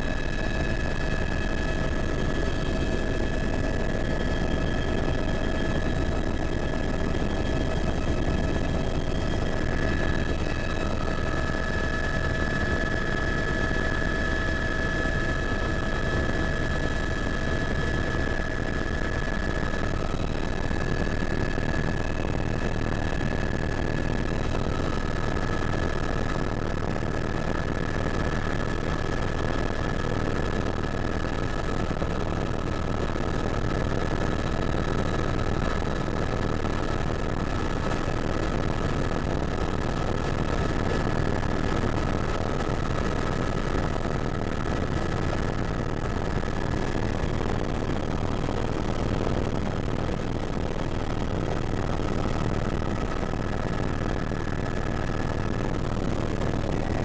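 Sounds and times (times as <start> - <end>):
helicopter rotor drone: 0.0 - 57.0
high turbine whine: 0.0 - 57.0.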